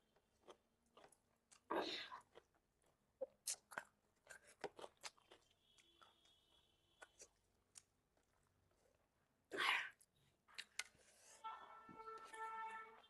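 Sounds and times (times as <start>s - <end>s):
food crunching and chewing: 0.1s - 9.1s.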